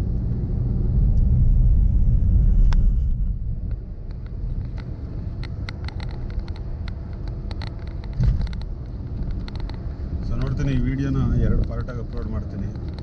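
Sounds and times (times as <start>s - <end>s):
car driving on road: 0.0s - 13.0s
light clicks or rattles: 3.6s - 13.0s.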